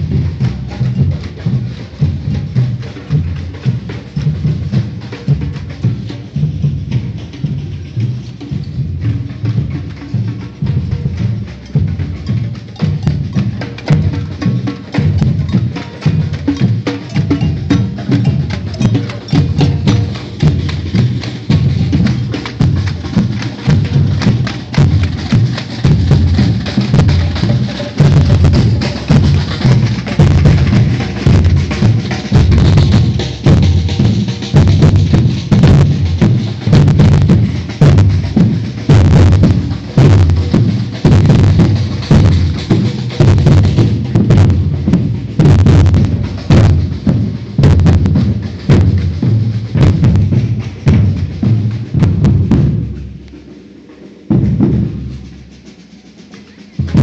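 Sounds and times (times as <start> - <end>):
deep bass drums: 0.0 - 55.8, 56.8 - 57.0
samba percussion ensemble: 0.0 - 57.0.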